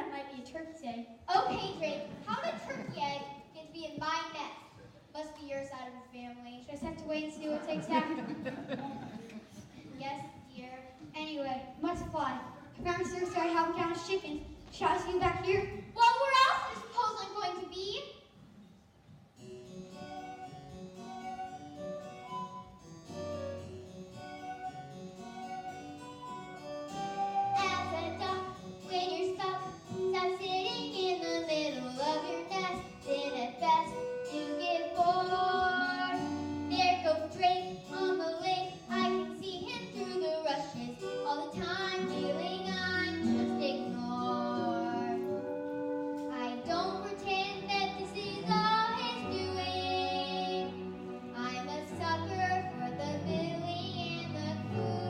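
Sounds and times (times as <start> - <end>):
keyboard accompaniment: 19.4 - 55.0
children singing: 27.0 - 36.4.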